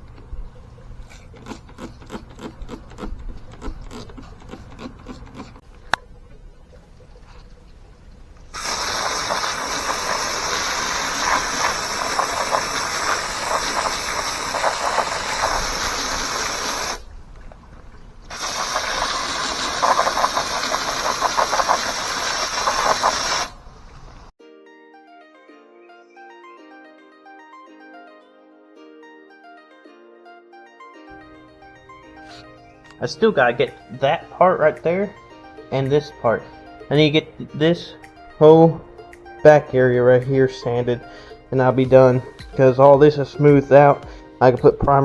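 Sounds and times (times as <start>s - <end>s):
garden hose spraying water: 0.0s - 24.3s, 31.2s - 45.0s
rapid ticking: 0.0s - 24.3s.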